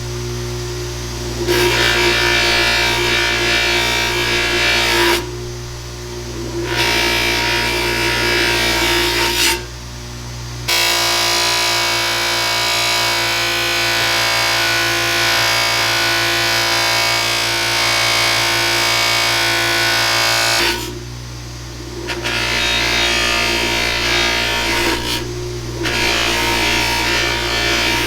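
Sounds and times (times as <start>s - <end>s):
rotary tool whining: 0.0s - 9.7s, 16.6s - 28.0s.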